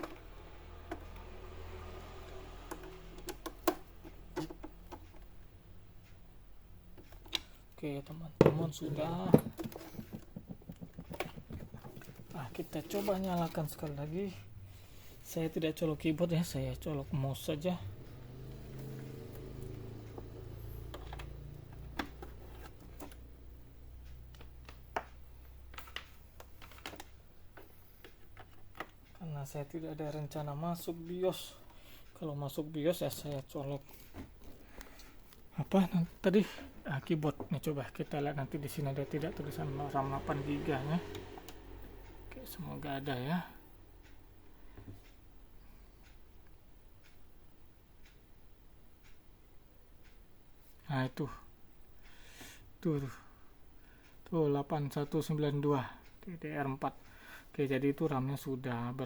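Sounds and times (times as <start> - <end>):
light plastic clicks and taps: 0.0 - 6.2, 6.9 - 14.0, 18.0 - 23.3, 24.0 - 29.3
screwdriver clicks and taps: 2.6 - 5.3.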